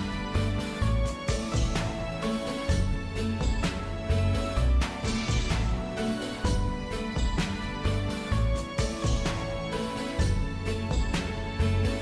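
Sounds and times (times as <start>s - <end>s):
music with bass pulses: 0.0s - 12.0s.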